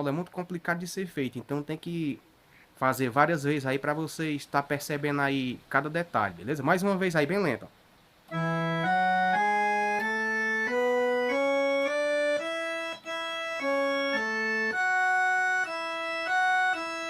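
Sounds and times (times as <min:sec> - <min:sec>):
organ-like keyboard melody: 0:08.3 - 0:17.0.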